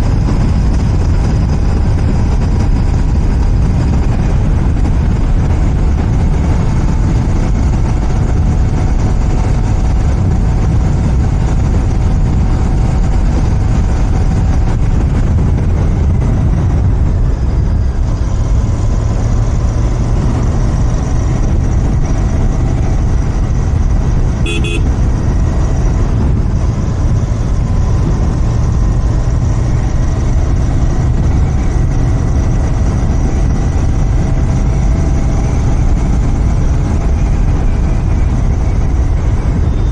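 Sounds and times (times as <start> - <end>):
motorcycle engine running: 0.0 - 39.9
short horn beep: 24.4 - 24.9.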